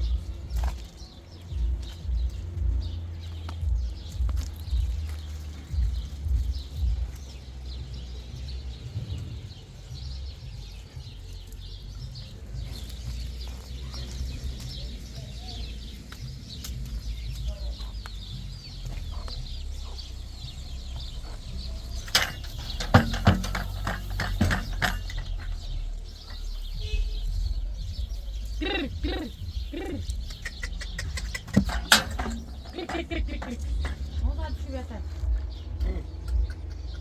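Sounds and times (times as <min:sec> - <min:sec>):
birds chirping: 0:00.0 - 0:37.0
steady low rumble: 0:00.0 - 0:37.0
sharp knocks: 0:22.0 - 0:26.5, 0:30.3 - 0:34.5.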